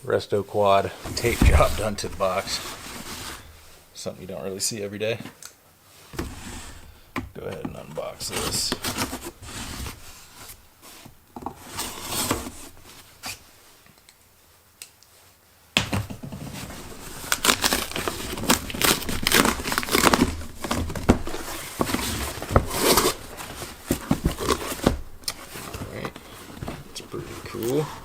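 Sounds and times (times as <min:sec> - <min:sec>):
packaging crinkling and rustling: 0:01.1 - 0:03.8, 0:16.2 - 0:28.0
packing tape tearing: 0:16.8 - 0:25.6.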